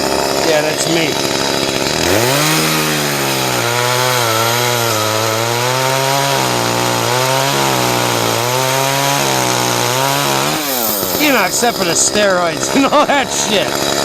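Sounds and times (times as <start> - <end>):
chainsaw cutting tree limbs: 0.0 - 14.0.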